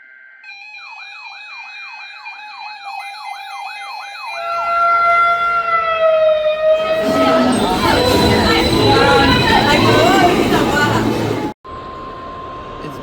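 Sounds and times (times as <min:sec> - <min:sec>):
siren yelping: 0:00.5 - 0:11.5
rumbling noise: 0:06.8 - 0:11.6.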